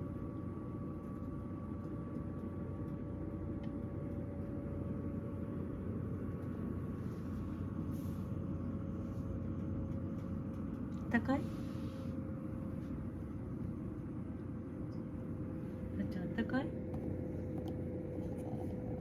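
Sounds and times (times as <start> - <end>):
room heater droning: 0.0 - 19.0
faint hum tone: 11.4 - 19.0.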